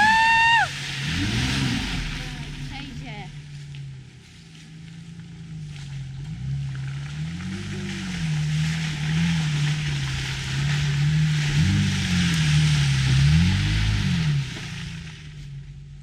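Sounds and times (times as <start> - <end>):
engine revving: 0.0 - 16.0.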